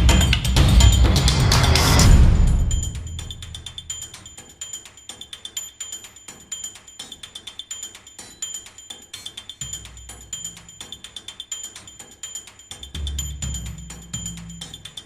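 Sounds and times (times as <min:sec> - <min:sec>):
loud music passage: 0:00.0 - 0:03.9
fast percussion beat: 0:00.0 - 0:15.0.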